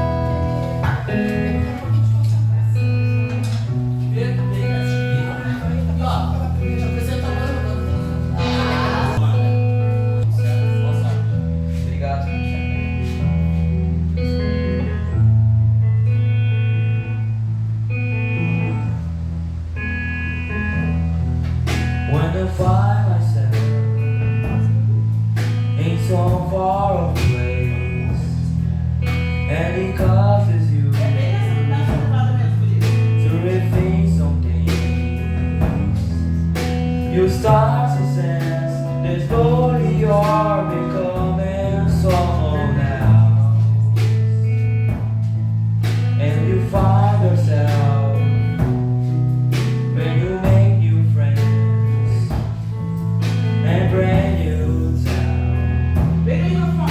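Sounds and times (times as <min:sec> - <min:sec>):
guitar: 0:00.0 - 0:56.9
held bass notes: 0:00.0 - 0:56.9
person singing: 0:08.0 - 0:10.4, 0:29.4 - 0:35.4, 0:37.0 - 0:44.1, 0:46.2 - 0:48.8, 0:53.6 - 0:55.7
steady drum beat: 0:31.0 - 0:48.0, 0:48.6 - 0:50.8.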